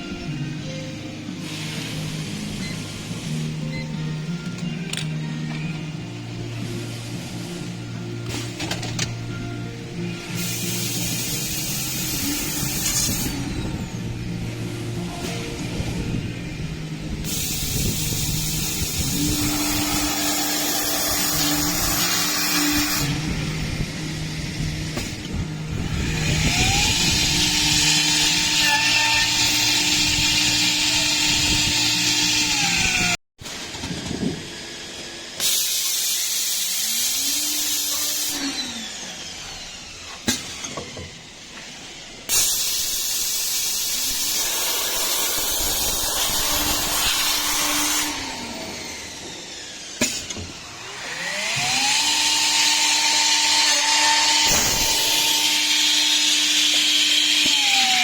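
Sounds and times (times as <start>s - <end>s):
hiss of cutting: 10.3s - 13.4s, 17.2s - 23.2s, 42.3s - 48.2s, 54.4s - 56.7s
drilling machine motor winding: 17.3s - 33.2s, 42.3s - 58.0s.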